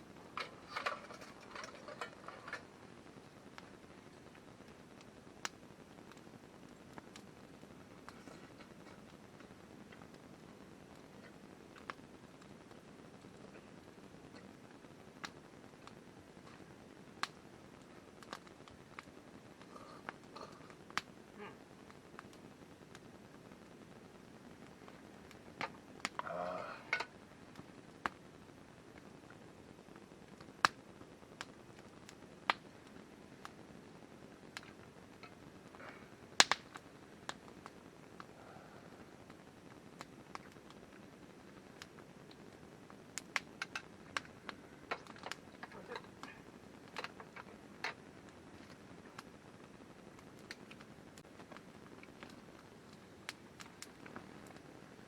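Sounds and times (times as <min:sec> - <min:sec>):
faint background hiss: 0:00.0 - 0:55.0
utensils clicking on cookware: 0:00.4 - 0:02.7.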